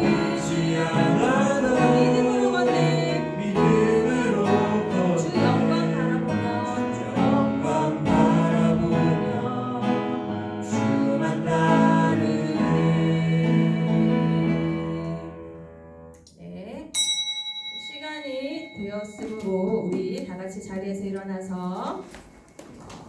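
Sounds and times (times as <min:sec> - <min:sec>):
voices singing: 0:00.0 - 0:15.4.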